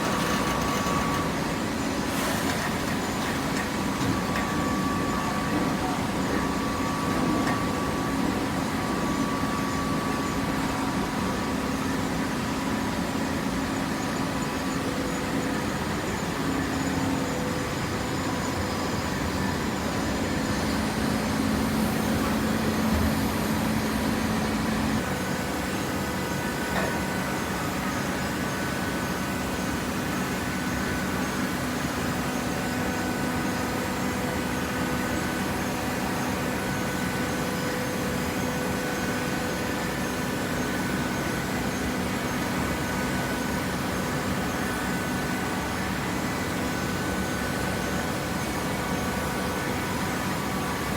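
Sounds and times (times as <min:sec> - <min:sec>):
baler machine running: 0:00.0 - 0:08.5
hydraulic power unit hum: 0:00.0 - 0:50.9.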